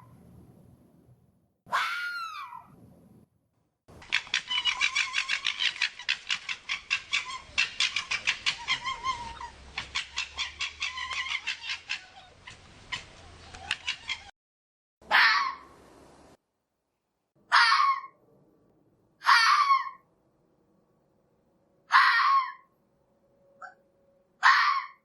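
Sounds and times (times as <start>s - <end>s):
fox chattering calls: 4.0s - 14.3s
fox falling cry: 19.2s - 20.0s.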